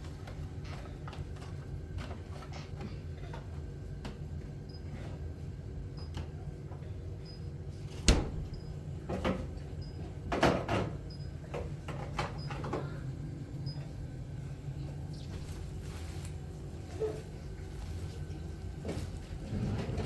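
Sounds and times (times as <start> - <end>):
steady low hum: 11.0 - 20.0.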